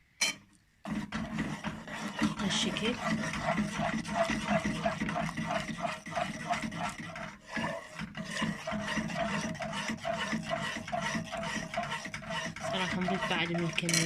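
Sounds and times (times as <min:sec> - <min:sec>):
utensil scraping round a pot: 0:00.8 - 0:14.0.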